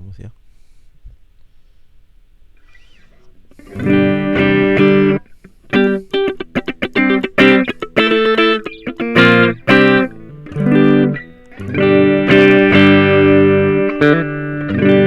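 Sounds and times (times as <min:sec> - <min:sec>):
electric guitar chord stabs: 0:03.5 - 0:15.0
ringing guitar chord: 0:03.6 - 0:15.0.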